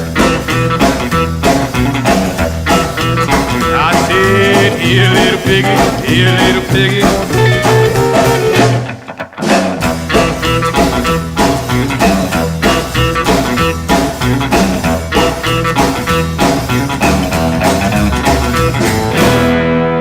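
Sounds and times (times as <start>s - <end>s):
guitar and bass riff: 0.0s - 20.0s.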